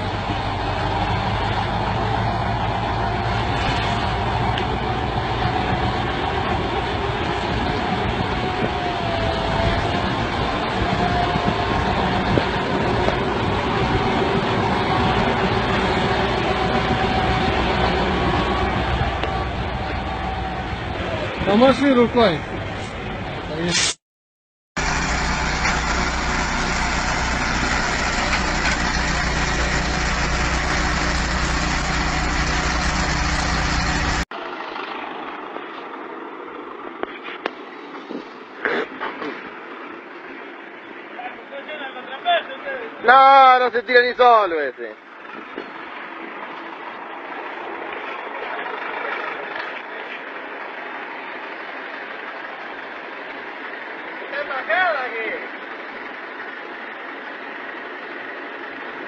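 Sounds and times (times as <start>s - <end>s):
heavy machine engine running: 0.0s - 21.4s, 24.8s - 36.9s.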